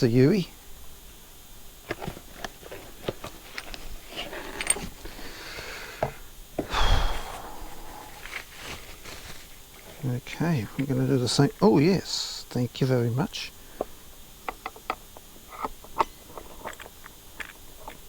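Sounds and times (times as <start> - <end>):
short breathy rush: 6.6 - 8.6.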